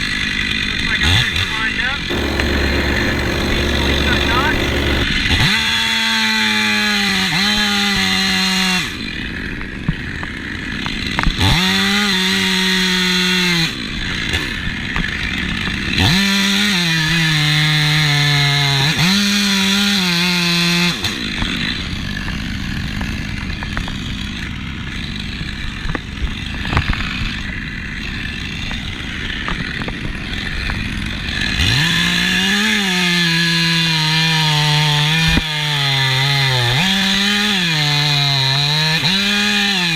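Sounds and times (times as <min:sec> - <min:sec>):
chainsaw engine revving: 0:02.1 - 0:05.1.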